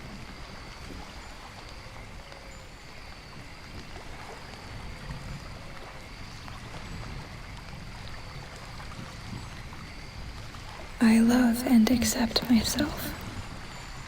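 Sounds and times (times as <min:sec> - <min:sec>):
falling rain hiss: 0:09.6 - 0:14.0.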